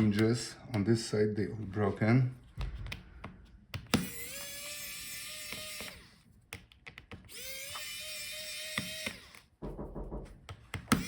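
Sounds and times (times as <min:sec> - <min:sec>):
electric screwdriver motor whine: 0:03.9 - 0:06.2, 0:07.3 - 0:09.5.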